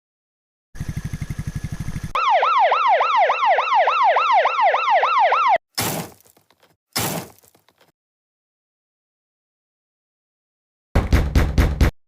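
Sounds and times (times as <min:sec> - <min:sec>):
electronic siren yelping: 0:01.7 - 0:05.6.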